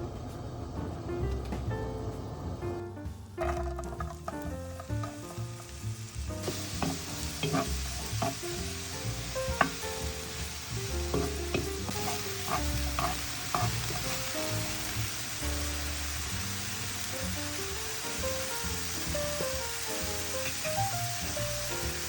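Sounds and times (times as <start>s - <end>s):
background music: 0.7s - 22.0s
food sizzling in pan: 3.3s - 22.0s
sharp crackles or utensil taps: 3.4s - 15.0s.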